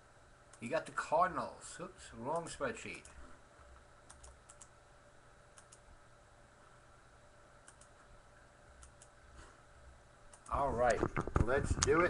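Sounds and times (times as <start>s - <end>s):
computer keyboard clicks: 4.1s - 4.7s, 7.7s - 7.9s.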